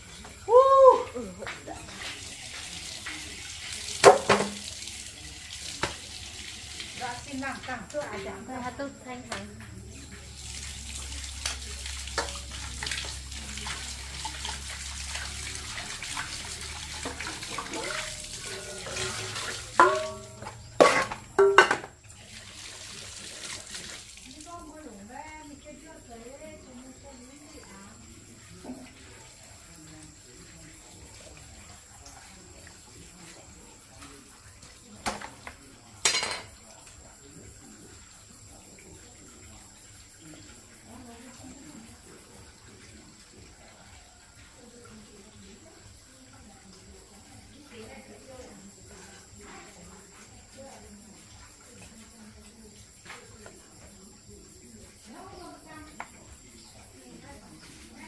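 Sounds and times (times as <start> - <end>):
water running from a tap: 0.0 - 58.0
water splash: 10.4 - 24.5.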